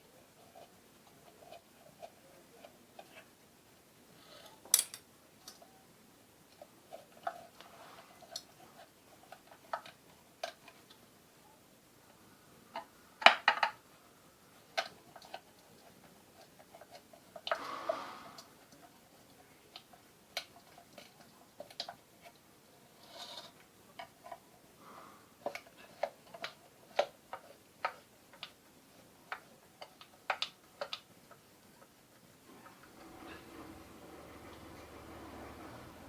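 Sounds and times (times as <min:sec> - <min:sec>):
metal clicks and taps: 0:04.7 - 0:05.6
scraping rustle: 0:32.5 - 0:36.0.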